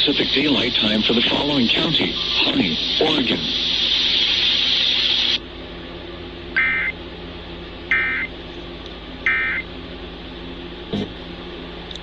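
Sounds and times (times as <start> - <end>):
static hiss: 0.0 - 5.4
low hum: 0.0 - 12.0
warbling data tone bursts: 6.6 - 7.0, 7.9 - 8.3, 9.2 - 9.6.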